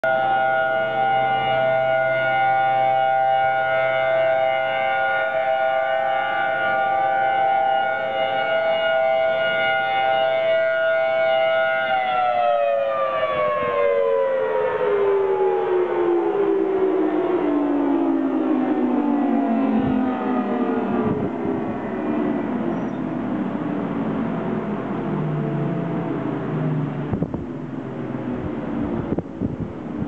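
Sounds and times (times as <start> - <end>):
warning siren winding down: 0.0 - 30.0.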